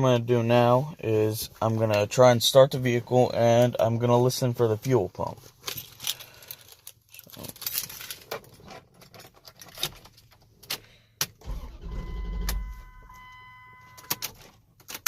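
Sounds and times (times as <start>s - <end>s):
car keys jangling: 5.6s - 10.8s
dashboard chime: 12.0s - 14.1s.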